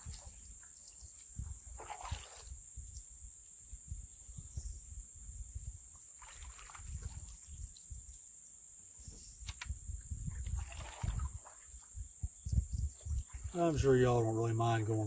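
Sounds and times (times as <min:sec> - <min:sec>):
paddle strokes splashing: 0:01.7 - 0:02.6, 0:06.2 - 0:07.2, 0:10.4 - 0:11.8
low rumbling on microphone: 0:09.2 - 0:15.0.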